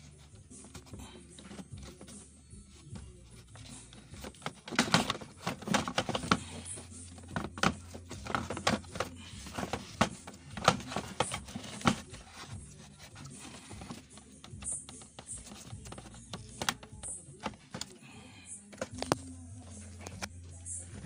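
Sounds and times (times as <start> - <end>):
plastic and metal parts rattling: 0.0 - 21.0.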